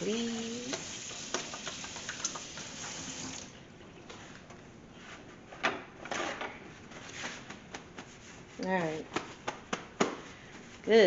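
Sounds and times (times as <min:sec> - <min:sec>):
tap running into sink: 0:00.4 - 0:03.5.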